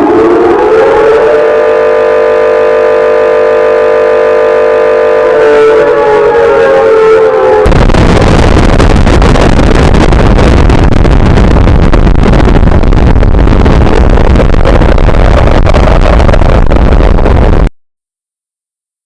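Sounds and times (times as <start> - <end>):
cartoon explosion rumbling blast: 5.7 - 17.7.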